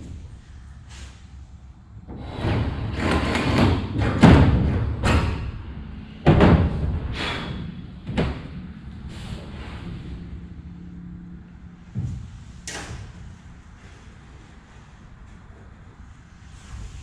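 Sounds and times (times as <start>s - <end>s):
knocks and thuds on metal hull: 6.2s - 7.1s.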